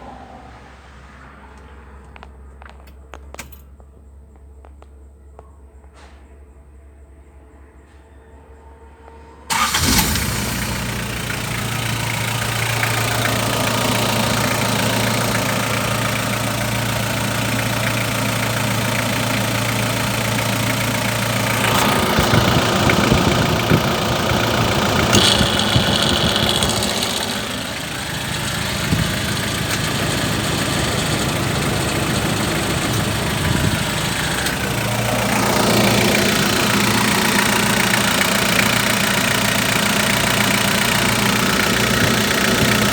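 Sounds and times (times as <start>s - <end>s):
engine idling: 9.5s - 42.9s.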